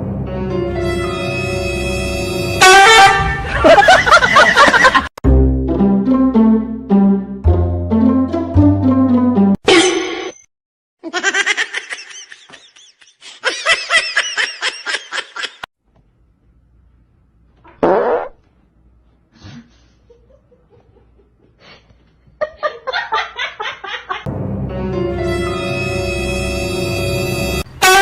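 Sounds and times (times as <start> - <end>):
person laughing: 3.4 - 5.1, 11.0 - 15.7, 19.4 - 24.3.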